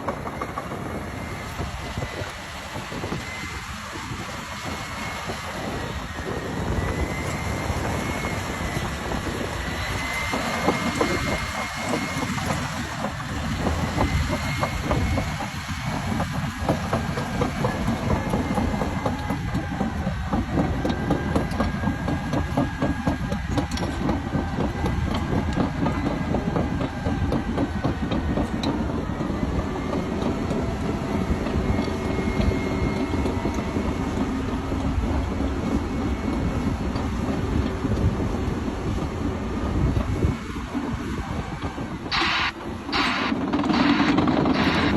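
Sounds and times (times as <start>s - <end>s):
bulldozer diesel engine: 0.0s - 44.9s
steel tracks clattering: 0.0s - 44.9s
high whine: 42.0s - 44.9s.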